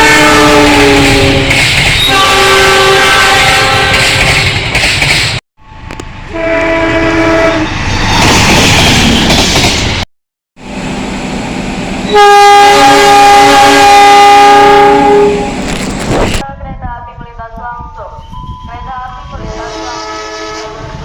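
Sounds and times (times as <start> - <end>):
locomotive horn blasts: 0.0 - 4.2, 6.3 - 7.7, 12.1 - 15.6, 19.4 - 21.0
train rumble and wheel clatter: 0.0 - 10.0, 10.6 - 21.0.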